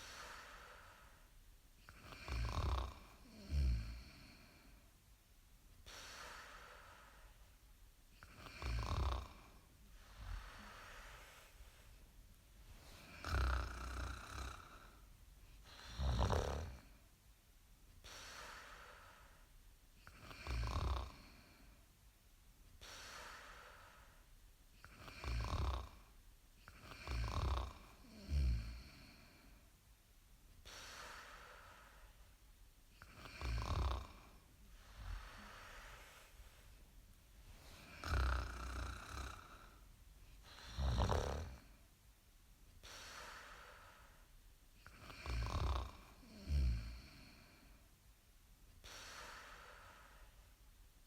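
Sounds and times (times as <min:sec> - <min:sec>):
loud rough snores: 0:01.9 - 0:04.5, 0:08.2 - 0:11.2, 0:12.9 - 0:15.0, 0:15.7 - 0:16.9, 0:20.1 - 0:21.5, 0:24.8 - 0:26.0, 0:26.7 - 0:29.4, 0:33.0 - 0:36.2, 0:37.7 - 0:39.8, 0:40.4 - 0:41.8, 0:44.8 - 0:47.6
breathy breaths: 0:05.8 - 0:07.6, 0:08.4 - 0:16.9, 0:30.6 - 0:32.4, 0:33.0 - 0:41.7, 0:42.8 - 0:47.9, 0:48.8 - 0:50.6.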